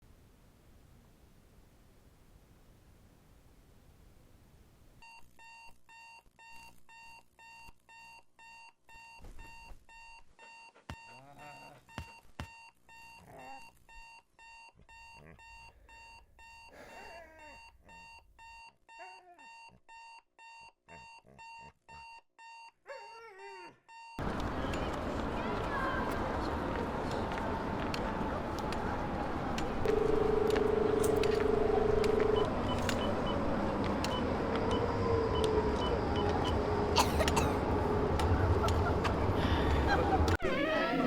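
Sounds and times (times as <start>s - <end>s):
alarm clock beeping: 5.0s - 16.7s, 17.4s - 22.7s, 29.6s - 36.7s
dog whining: 10.4s - 12.2s, 13.0s - 13.8s, 14.9s - 18.2s, 39.9s - 41.0s.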